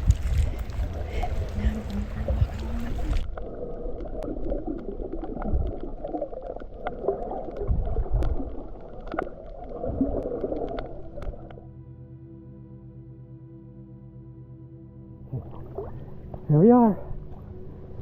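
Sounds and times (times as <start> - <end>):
quiet music: 0.0 - 3.4, 9.1 - 18.0
small clicks and low thumps: 0.0 - 11.7
water sloshing and gurgling: 0.0 - 11.8, 15.1 - 18.0.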